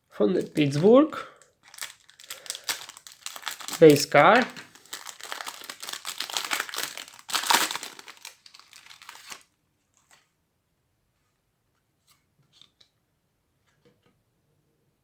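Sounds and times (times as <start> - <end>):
plastic wrapping crinkling and tearing: 0.4 - 9.5.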